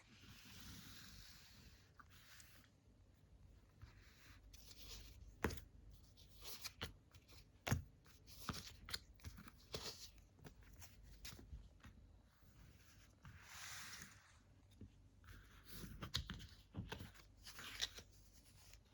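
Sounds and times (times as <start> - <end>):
playing cards tapping and rustling: 6.3 - 11.8, 15.6 - 18.8.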